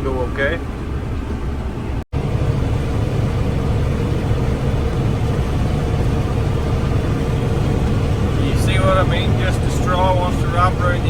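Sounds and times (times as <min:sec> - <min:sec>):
combine harvester rumble: 0:00.0 - 0:11.0.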